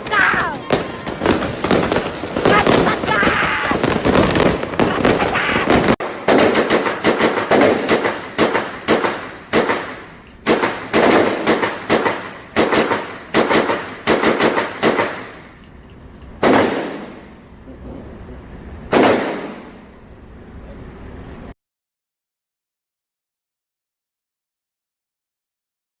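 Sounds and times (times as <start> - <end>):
gunshots: 0.0 - 15.6, 16.4 - 17.4, 18.9 - 19.9.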